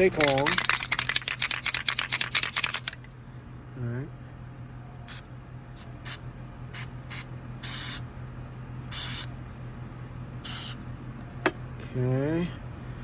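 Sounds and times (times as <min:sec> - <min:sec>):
aerosol spray can hissing: 0:08.9 - 0:09.3, 0:10.5 - 0:10.8.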